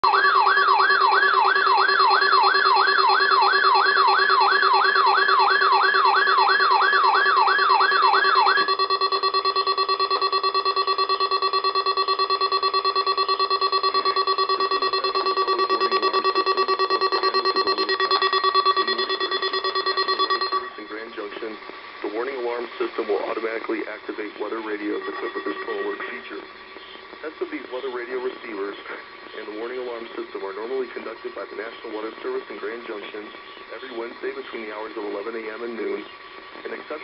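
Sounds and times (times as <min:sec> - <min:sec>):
rising siren sweeps: 0:00.0 - 0:08.8
steady high alarm tone: 0:00.0 - 0:21.3, 0:24.1 - 0:28.6.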